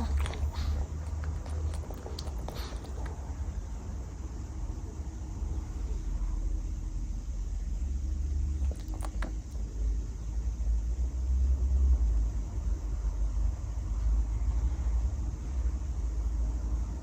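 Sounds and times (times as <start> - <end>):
dog snoring: 0.0 - 3.4, 8.5 - 9.6.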